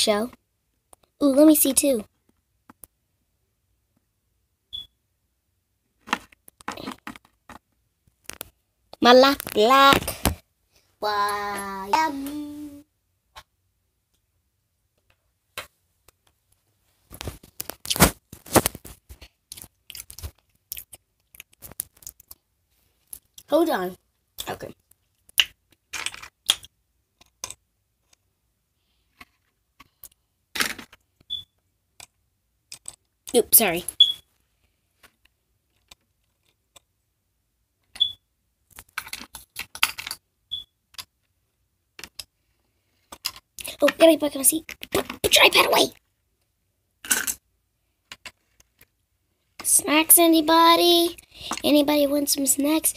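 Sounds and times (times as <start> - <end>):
rustles and scrapes: 16.7 - 20.6
small hard objects clicking: 19.5 - 22.4, 24.4 - 27.6.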